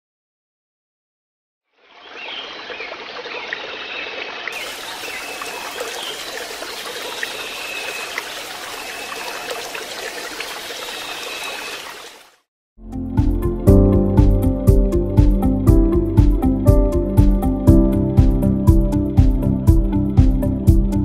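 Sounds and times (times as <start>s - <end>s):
running water trickling: 1.8s - 12.4s.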